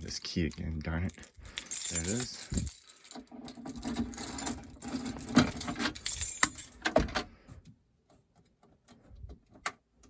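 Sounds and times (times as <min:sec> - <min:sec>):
keys jangling and clinking: 0:00.0 - 0:06.8
sharp clicks of keys: 0:00.0 - 0:06.8.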